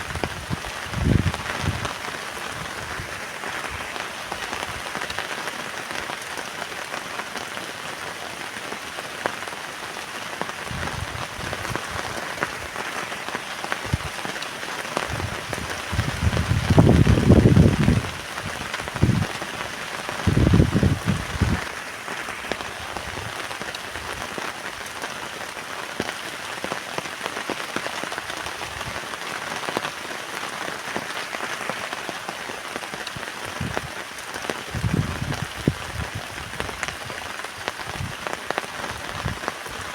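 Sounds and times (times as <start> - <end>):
wind gust buffeting tent: 0.0 - 5.1, 10.6 - 24.4, 33.1 - 34.0, 34.6 - 39.9
heavy rain on a tent: 0.0 - 39.9.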